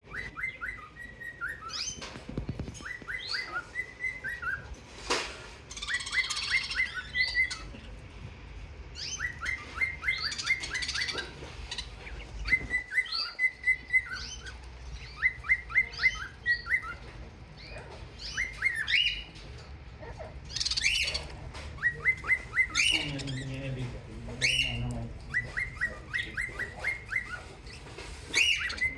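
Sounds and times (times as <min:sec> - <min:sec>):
budgerigars chirping: 0:00.0 - 0:08.2, 0:08.9 - 0:28.9
high bird squawks: 0:05.4 - 0:08.0, 0:20.0 - 0:23.6.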